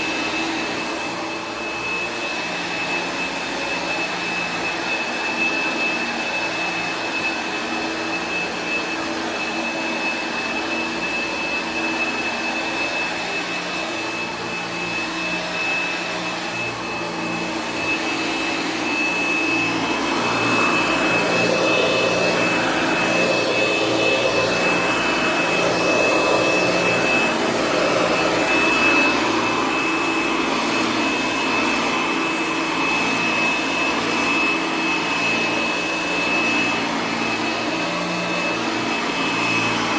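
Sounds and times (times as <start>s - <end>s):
upright vacuum cleaner running: 0.0s - 39.9s.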